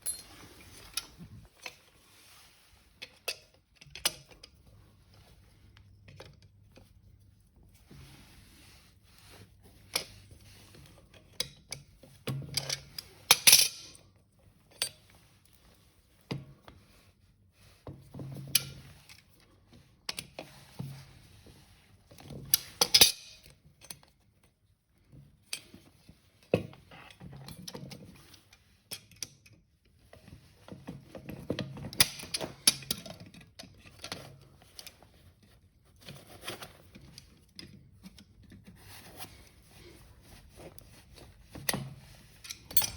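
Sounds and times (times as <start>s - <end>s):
small metal parts clinking: 0.0s - 0.4s, 42.4s - 42.9s.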